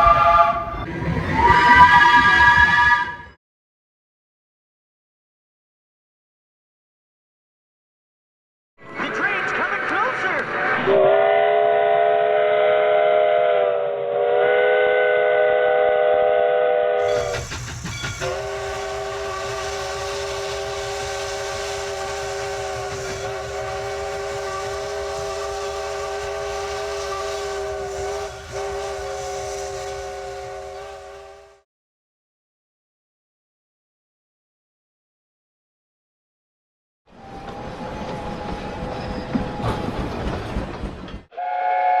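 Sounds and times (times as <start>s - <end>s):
train chime whistle: 0.0s - 3.4s, 10.9s - 31.6s, 41.3s - 42.0s.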